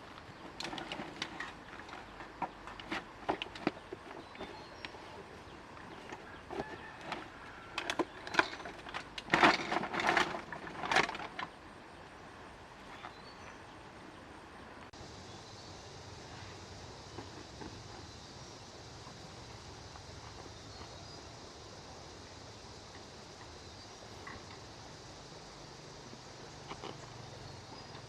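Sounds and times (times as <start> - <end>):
low steady background noise: 0.0 - 28.0.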